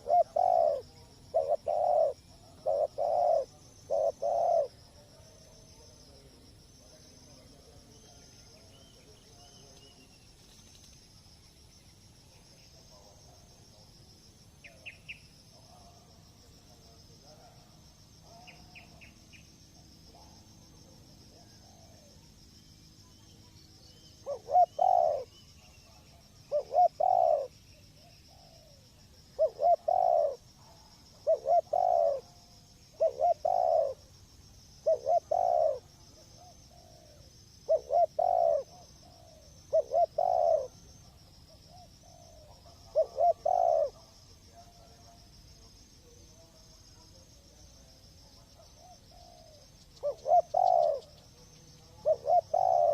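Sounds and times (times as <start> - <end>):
dove cooing: 0.0 - 5.3, 21.3 - 22.2, 24.2 - 34.1, 34.8 - 45.1, 48.3 - 52.9.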